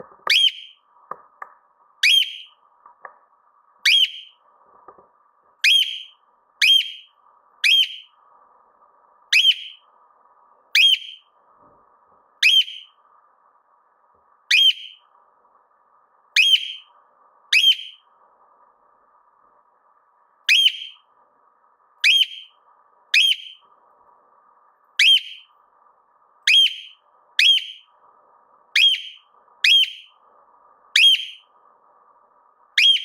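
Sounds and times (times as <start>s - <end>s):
cockatiel shrill whistled calls: 0.3s - 0.8s, 2.0s - 2.5s, 3.9s - 4.3s, 5.6s - 8.1s, 9.3s - 9.8s, 10.8s - 11.2s, 12.4s - 12.9s, 14.5s - 15.0s, 16.4s - 16.8s, 17.6s - 18.0s, 20.5s - 21.0s, 22.0s - 22.5s, 23.2s - 23.6s, 25.0s - 25.5s, 26.5s - 27.8s, 28.8s - 30.1s, 31.0s - 31.4s, 32.8s - 33.0s.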